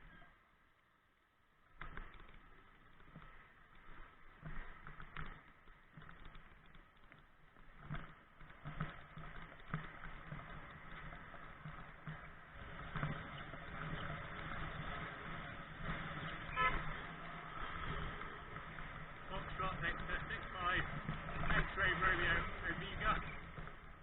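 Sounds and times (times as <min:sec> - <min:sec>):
car approaching: 0:01.9 - 0:24.0
road traffic noise: 0:07.8 - 0:24.0
car horn blast: 0:16.5 - 0:17.0.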